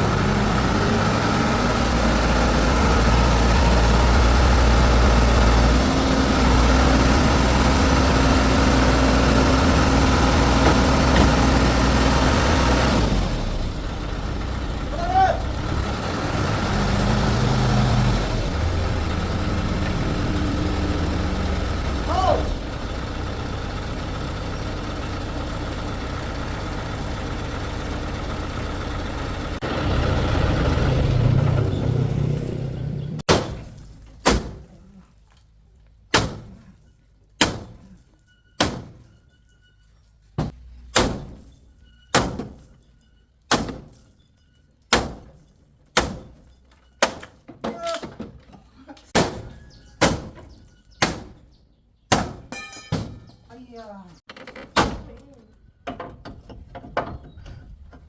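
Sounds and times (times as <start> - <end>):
engine running: 0.0 - 33.3
sharp ringing knocks: 52.1 - 53.5.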